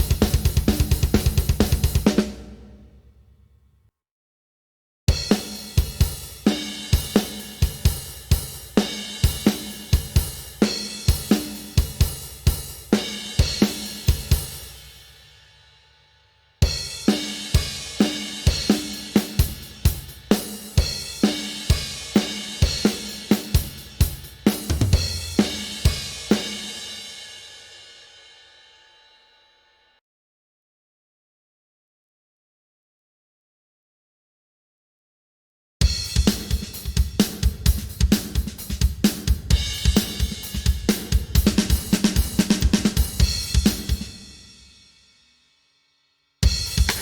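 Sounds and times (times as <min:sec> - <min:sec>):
acoustic drum kit grooves: 0:00.0 - 0:03.2, 0:05.1 - 0:15.4, 0:16.6 - 0:28.0, 0:35.8 - 0:45.0, 0:46.4 - 0:47.0.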